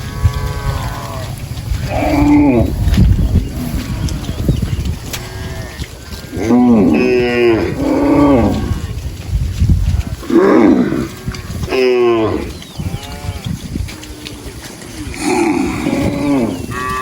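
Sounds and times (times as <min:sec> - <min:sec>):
cattle mooing: 0:00.0 - 0:09.0, 0:09.8 - 0:17.0.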